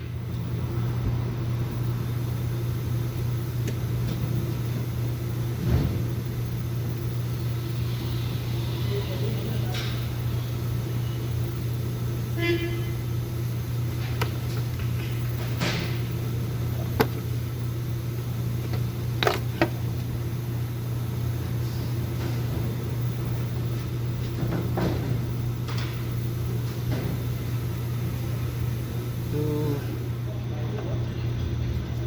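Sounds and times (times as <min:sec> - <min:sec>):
sharp clicks and knocks: 0:18.6 - 0:19.8.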